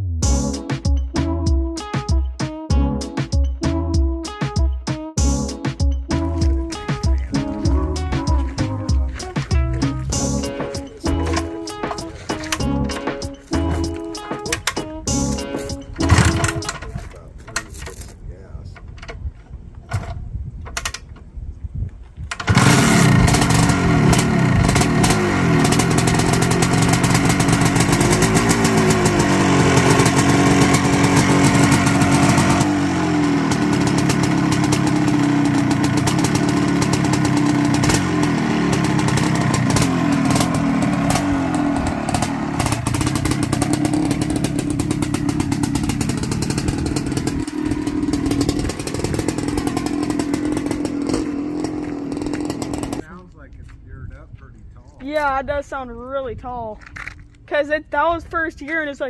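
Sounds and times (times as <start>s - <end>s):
dirt bike engine revving: 5.2s - 16.9s, 22.4s - 53.1s.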